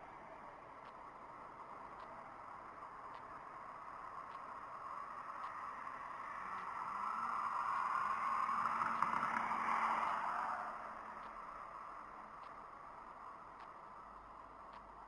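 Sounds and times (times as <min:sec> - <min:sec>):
vehicle passing by: 0:04.9 - 0:12.2.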